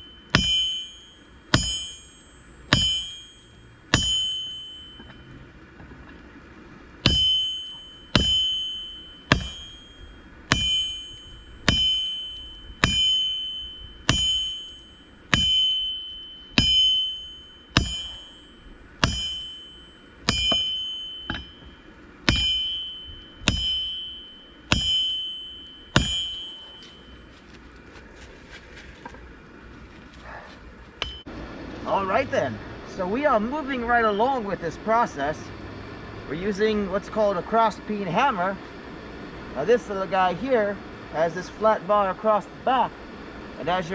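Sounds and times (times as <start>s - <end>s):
hammer striking steel on anvil: 0.0s - 5.4s, 7.0s - 27.5s, 31.0s - 35.4s.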